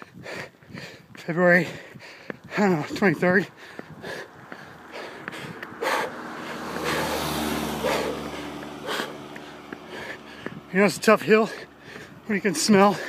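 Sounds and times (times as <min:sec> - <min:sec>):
runner breathing hard: 0:00.0 - 0:13.0
car driving past: 0:04.2 - 0:12.2.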